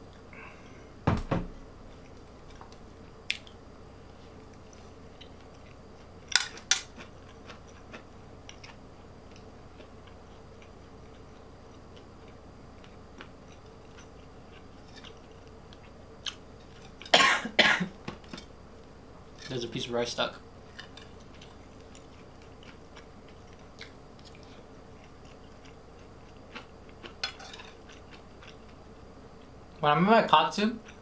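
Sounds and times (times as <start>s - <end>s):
quiet chewing: 4.2s - 17.1s, 20.7s - 29.6s.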